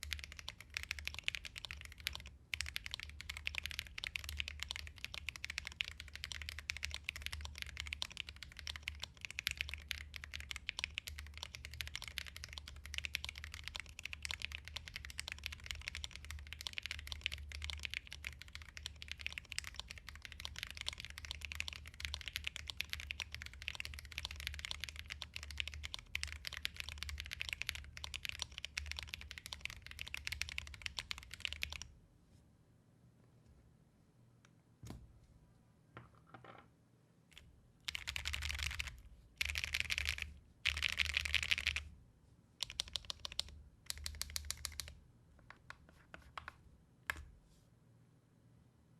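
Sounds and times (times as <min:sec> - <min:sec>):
mechanical keyboard typing: 0:00.0 - 0:31.9, 0:37.9 - 0:41.8, 0:42.6 - 0:45.0.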